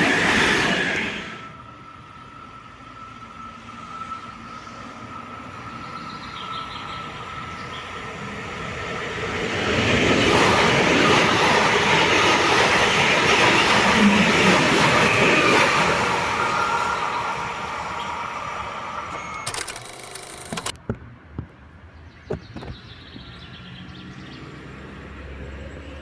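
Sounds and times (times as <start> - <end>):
train passing: 0.0 - 19.4.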